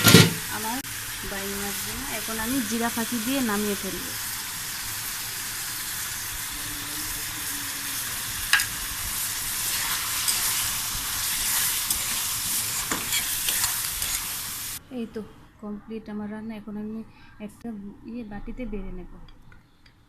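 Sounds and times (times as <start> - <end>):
curry sizzling in oil: 0.0 - 14.8.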